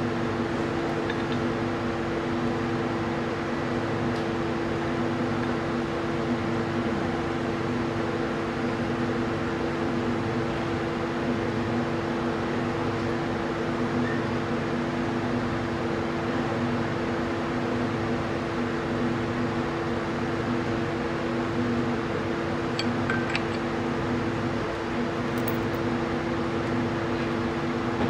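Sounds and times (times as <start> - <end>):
mechanical hum: 0.0 - 28.0.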